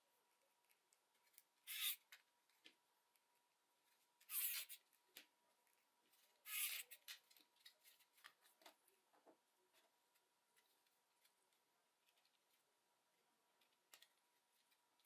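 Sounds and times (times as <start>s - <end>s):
light clicks and taps of small parts: 13.6s - 15.0s.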